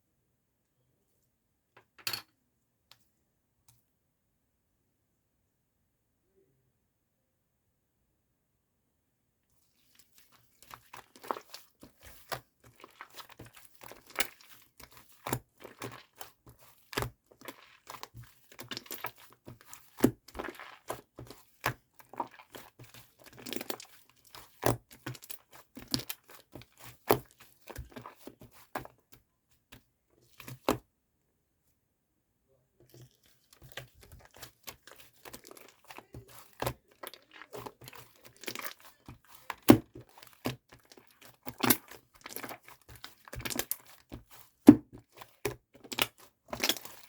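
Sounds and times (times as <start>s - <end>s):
slime popping and crackling: 10.6s - 28.9s, 33.6s - 47.0s.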